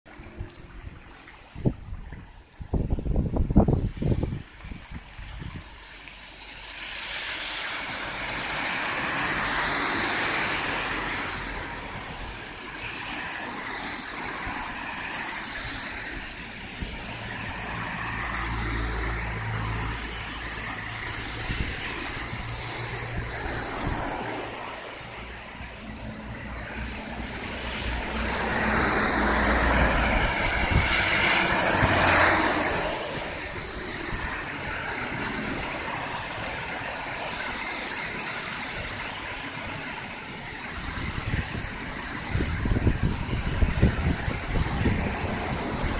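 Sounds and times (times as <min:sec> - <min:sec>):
heavy rain: 0:00.1 - 0:45.9
strong wind: 0:00.2 - 0:06.0, 0:07.2 - 0:45.9.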